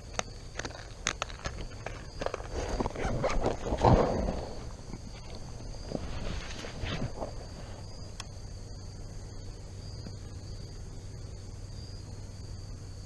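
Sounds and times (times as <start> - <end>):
high-pitched insect chorus: 0.0 - 13.0
low steady hum: 0.0 - 13.0.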